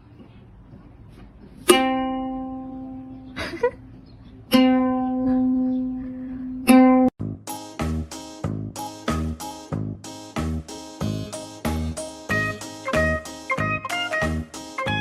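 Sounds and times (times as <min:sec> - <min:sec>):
plucked string note: 0:01.7 - 0:03.2, 0:04.5 - 0:06.0, 0:06.6 - 0:07.1.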